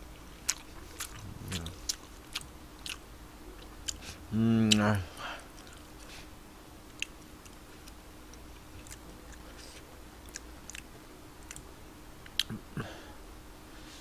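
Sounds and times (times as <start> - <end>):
faint hum: 0.0 - 14.0
faint chewing: 0.1 - 3.0, 5.4 - 6.3, 6.9 - 12.6.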